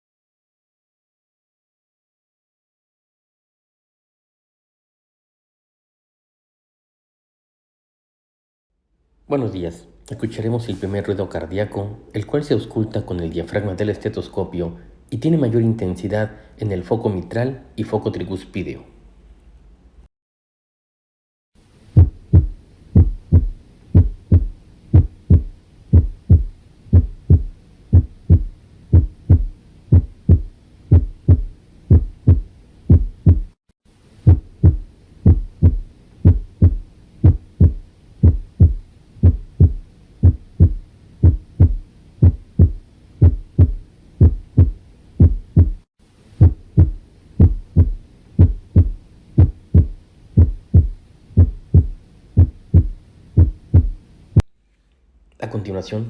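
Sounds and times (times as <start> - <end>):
heartbeat through stethoscope: 22.0 - 33.6, 34.2 - 54.5.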